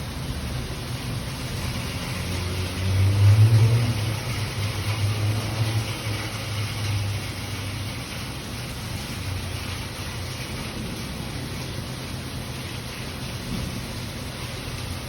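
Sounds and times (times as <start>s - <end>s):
heavy rain: 0.0s - 15.0s
thunder rumbling: 13.4s - 14.2s.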